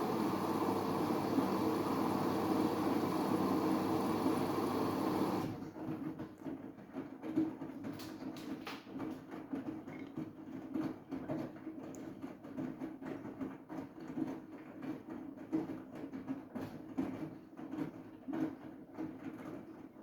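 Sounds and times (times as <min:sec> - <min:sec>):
washing machine humming: 0:00.0 - 0:06.2
faint clicks and patter: 0:05.8 - 0:20.0.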